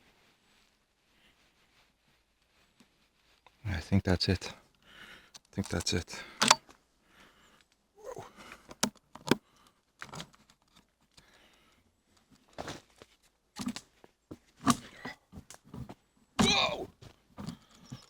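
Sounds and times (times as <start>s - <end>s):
rustling: 0.0s - 3.6s
sharp clicks or knocks: 6.4s - 6.6s
person exclaiming whoa: 16.4s - 16.9s.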